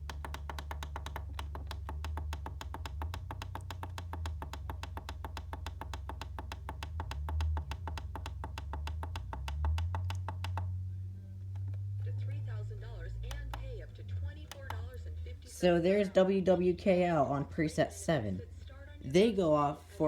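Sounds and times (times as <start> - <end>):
low hum: 0.0 - 20.0
radio tuning clicks: 11.6 - 15.1.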